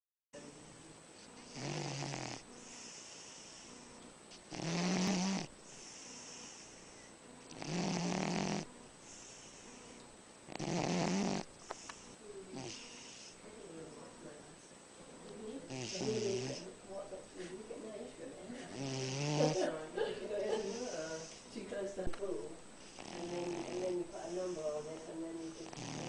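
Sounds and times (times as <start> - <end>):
man snoring: 1.5 - 3.7, 4.5 - 6.8, 7.5 - 9.7, 10.5 - 11.5, 12.6 - 13.4, 15.7 - 16.6, 18.7 - 19.7, 23.0 - 24.6, 25.5 - 26.0.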